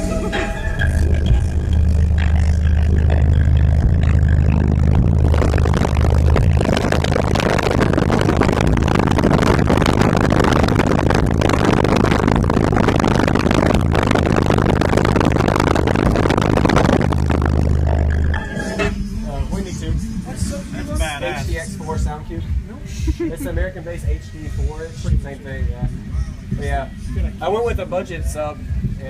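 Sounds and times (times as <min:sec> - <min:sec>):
harsh buzz and rattle: 0:00.0 - 0:20.7
deep bass tone from subwoofers: 0:00.0 - 0:29.0.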